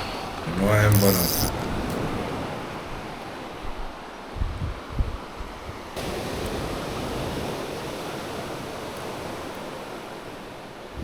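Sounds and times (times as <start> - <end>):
wave breaking and washing: 5.7 - 11.0.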